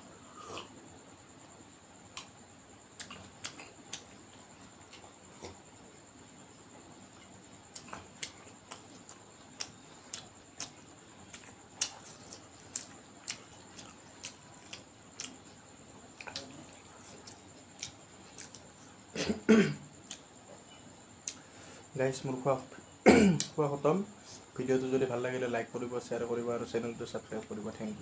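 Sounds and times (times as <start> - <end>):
chewing mouth clicks and smacks: 3.0 - 4.1, 7.7 - 15.4, 16.2 - 18.7
person coughing: 19.2 - 19.8, 23.0 - 23.4.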